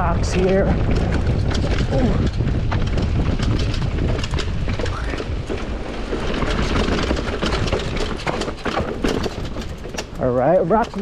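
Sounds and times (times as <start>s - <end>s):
bike knocking over rocks: 0.0s - 11.0s
steady low rumble: 0.0s - 11.0s.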